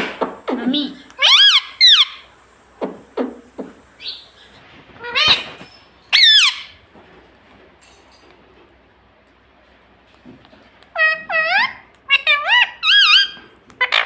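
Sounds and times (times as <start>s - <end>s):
parakeet chirps and shrill calls: 0.0s - 6.8s, 11.0s - 14.0s.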